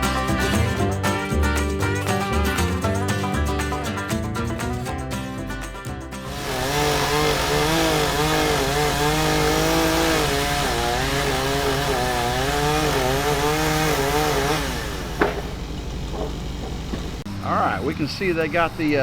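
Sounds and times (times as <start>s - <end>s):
chainsaw cutting wood: 6.3s - 17.3s.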